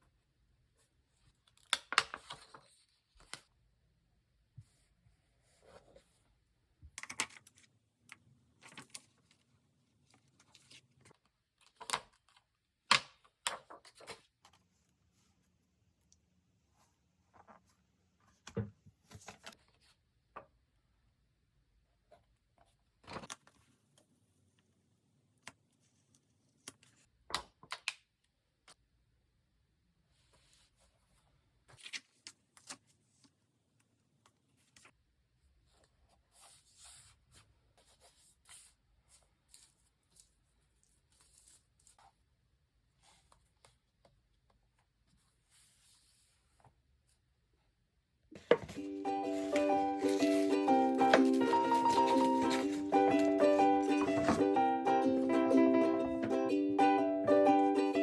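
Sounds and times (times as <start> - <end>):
paper rustling: 48.4 - 56.4.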